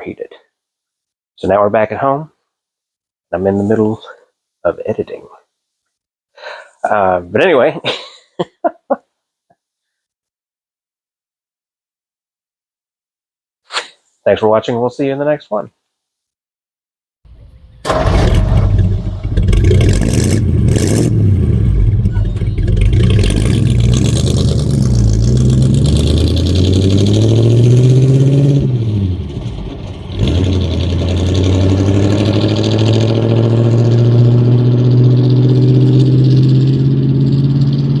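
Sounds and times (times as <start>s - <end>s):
pickup truck engine revving: 17.3s - 38.0s.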